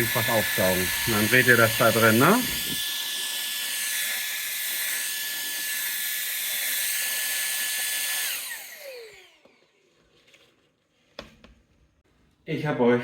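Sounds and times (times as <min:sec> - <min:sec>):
vacuum motor spinning down: 0:00.0 - 0:04.1, 0:05.2 - 0:09.8
stick vacuum whining: 0:00.0 - 0:09.9.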